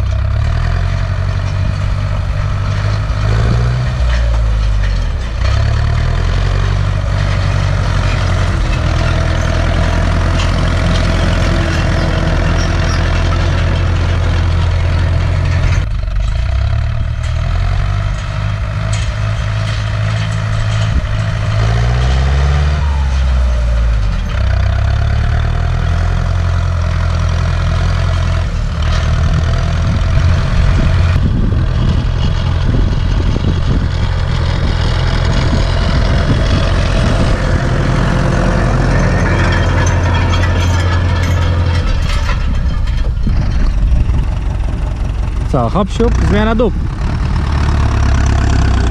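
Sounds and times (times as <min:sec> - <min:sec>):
tractor diesel engine under load: 0:00.0 - 0:48.9.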